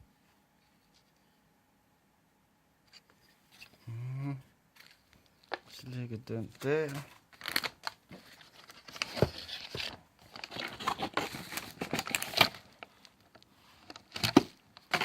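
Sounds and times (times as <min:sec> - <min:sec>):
packaging rustling and crinkling: 0:04.8 - 0:15.0.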